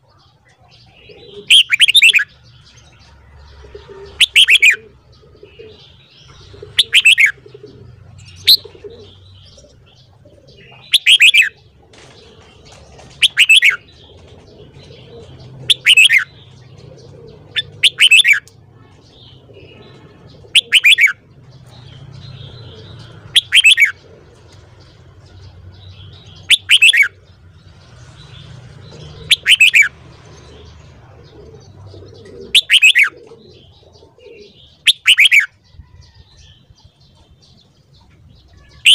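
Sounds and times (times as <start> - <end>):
bulbul singing: 0.0 - 38.9.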